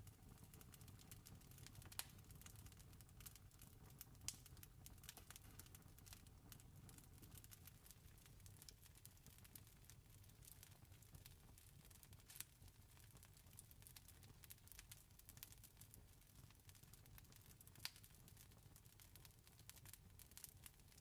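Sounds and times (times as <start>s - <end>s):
campfire crackling: 0.1s - 21.0s.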